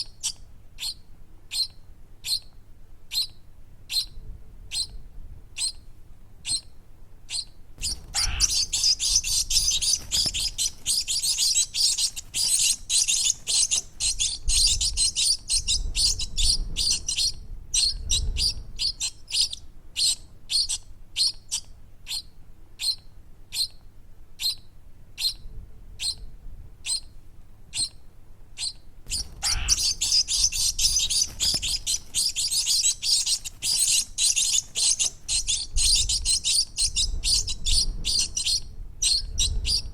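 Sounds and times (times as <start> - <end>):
small birds chirping: 0.0 - 5.0, 5.6 - 39.9.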